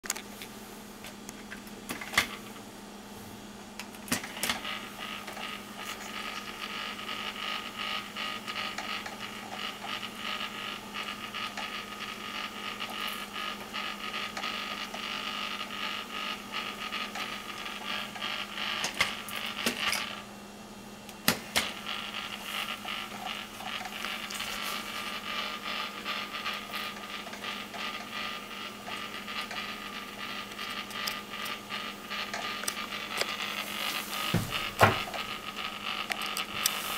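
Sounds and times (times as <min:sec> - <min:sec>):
steady low hum: 0:00.1 - 0:36.9
plastic gears clicking grind: 0:21.6 - 0:33.6.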